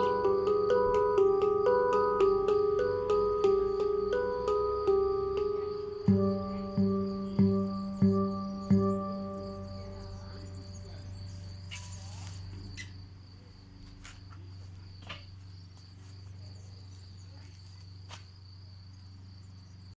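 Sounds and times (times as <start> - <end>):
high-pitched trill: 0.0 - 11.3
handpan notes ringing: 0.0 - 11.4
low tone: 0.0 - 11.6.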